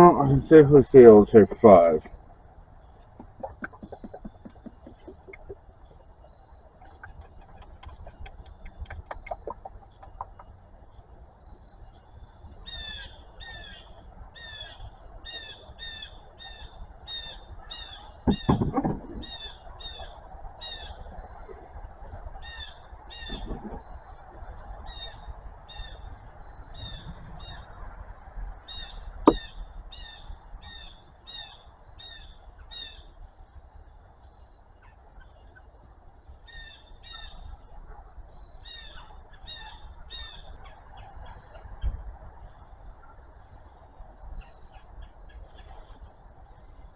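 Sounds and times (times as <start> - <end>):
loud thump: 18.3 - 19.2.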